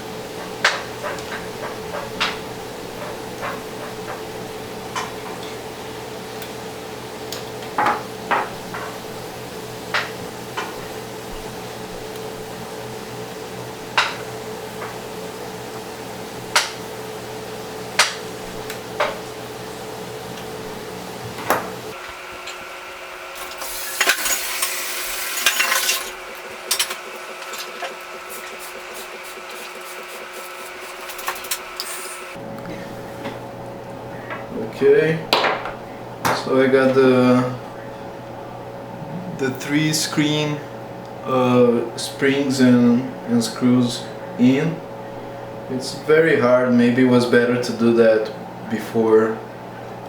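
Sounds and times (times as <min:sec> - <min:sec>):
steady hum: 0:00.0 - 0:50.0.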